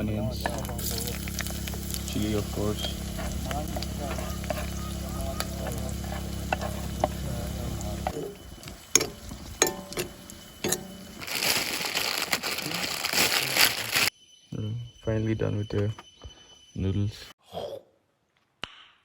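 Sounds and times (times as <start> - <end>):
low steady hum: 0.0 - 13.2
onion sizzling in oil: 0.0 - 14.1
spoon scraping a pan: 0.4 - 11.2.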